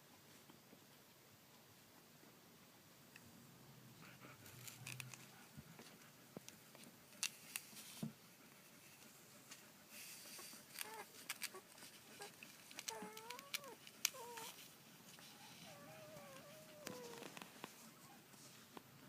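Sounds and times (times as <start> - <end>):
puppies rustling and clicking: 4.4 - 18.9
puppies squeaking: 10.4 - 14.6.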